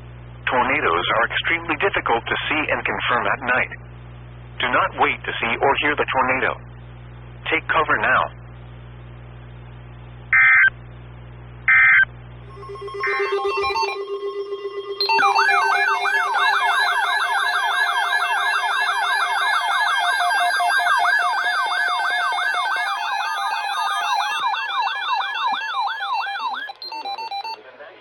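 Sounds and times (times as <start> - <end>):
steady low tone: 12.4 - 19.4
warbling electronic alert tone: 12.5 - 24.5.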